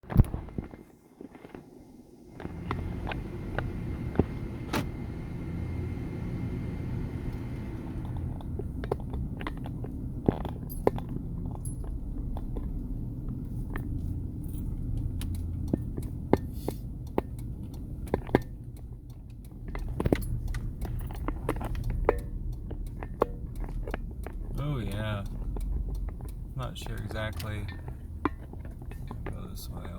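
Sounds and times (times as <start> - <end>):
vehicle engine and road rumble: 0.0 - 29.9
clicks knocks and rattles: 17.1 - 29.9.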